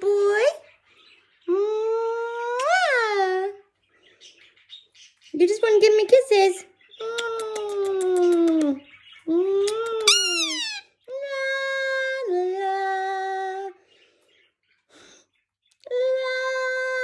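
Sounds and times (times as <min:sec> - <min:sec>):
parakeet calling: 0:10.0 - 0:11.0.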